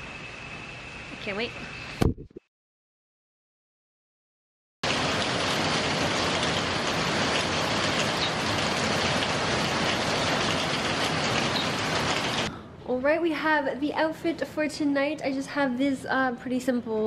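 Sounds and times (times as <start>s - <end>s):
heavy rain pouring: 4.8s - 12.5s.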